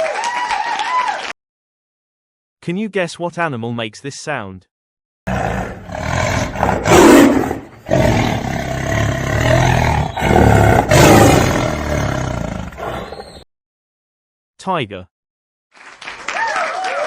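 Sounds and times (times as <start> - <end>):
tiger roaring: 5.3 - 13.4.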